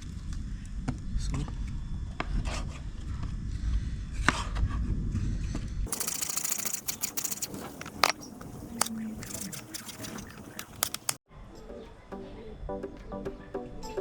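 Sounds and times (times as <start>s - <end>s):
clicks and scrapes handling chicken: 5.9s - 11.2s
background music: 11.4s - 14.0s.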